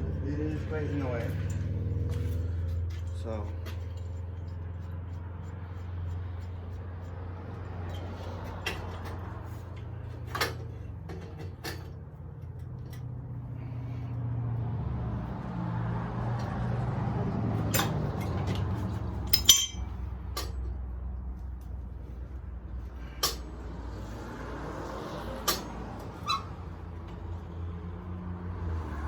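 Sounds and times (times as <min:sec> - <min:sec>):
metallic clanks of tools: 0:19.2 - 0:20.7.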